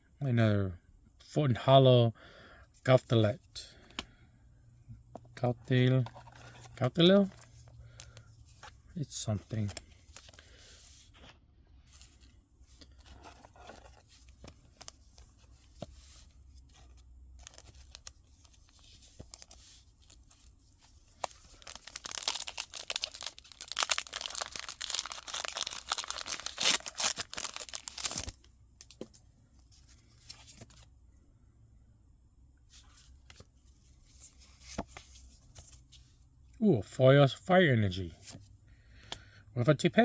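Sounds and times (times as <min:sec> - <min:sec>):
foil wrapper crinkling and tearing: 0:21.2 - 0:28.5.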